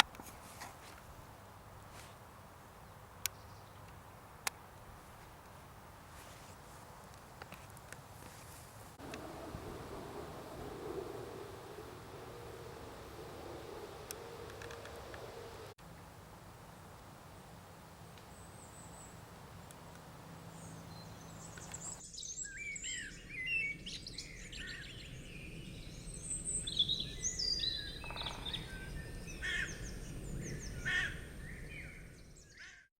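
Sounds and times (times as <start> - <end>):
small birds chirping: 2.7 - 4.0.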